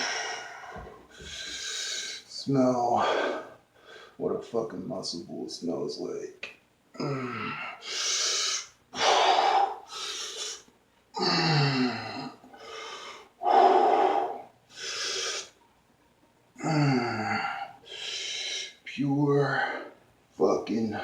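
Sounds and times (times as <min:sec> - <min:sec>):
man breathing forcefully: 0:00.0 - 0:02.2, 0:07.8 - 0:10.6, 0:12.6 - 0:15.5
man grunting: 0:07.0 - 0:07.7.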